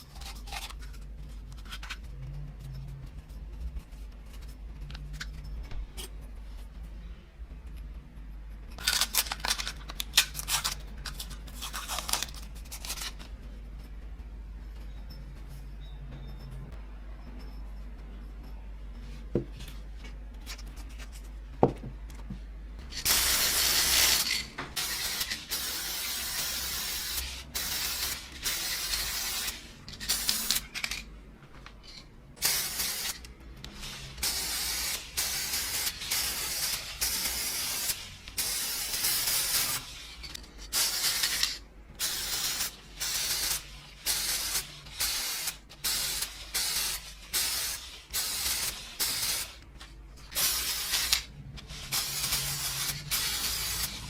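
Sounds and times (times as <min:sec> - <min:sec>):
aerosol spray can spraying: 0:23.0 - 0:30.6, 0:32.4 - 0:39.9, 0:40.7 - 0:49.6, 0:50.3 - 0:54.0.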